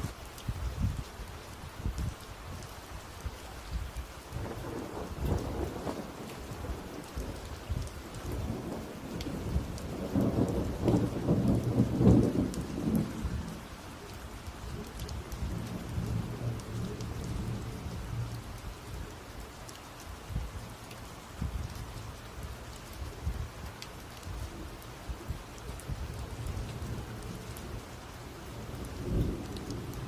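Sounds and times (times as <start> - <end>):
rain falling: 0.0 - 30.0
thunder rumble: 4.4 - 13.7, 25.1 - 30.0.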